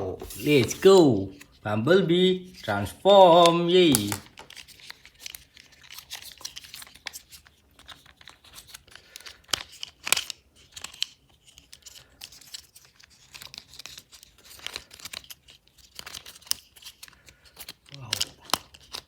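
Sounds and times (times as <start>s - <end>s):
plastic toy crinkling and rustling: 0.3s - 19.0s
plastic toy snapping: 3.9s - 4.5s.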